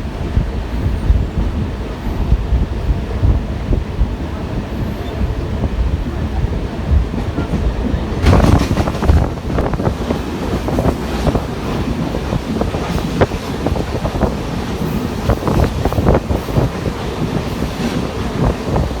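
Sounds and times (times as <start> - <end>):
train rumble: 0.0 - 19.0
wheels clattering over rail joints: 7.1 - 16.8.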